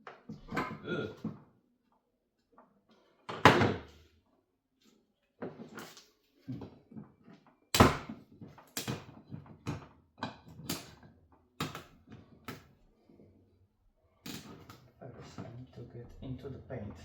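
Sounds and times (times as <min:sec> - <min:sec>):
objects knocking and clunking: 0:00.0 - 0:01.6, 0:02.6 - 0:04.1, 0:05.4 - 0:12.8, 0:14.2 - 0:17.0.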